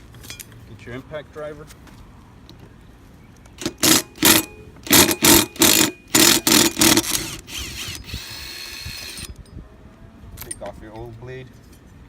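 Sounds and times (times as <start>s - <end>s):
impact driver bursts: 3.6s - 9.3s.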